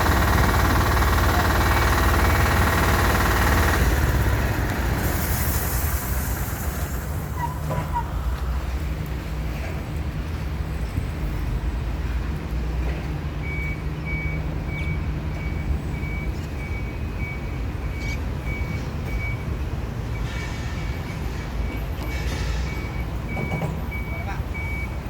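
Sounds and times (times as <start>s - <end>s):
electric forklift rumble: 0.0s - 7.4s
forklift warning alarm beeps: 13.4s - 25.0s.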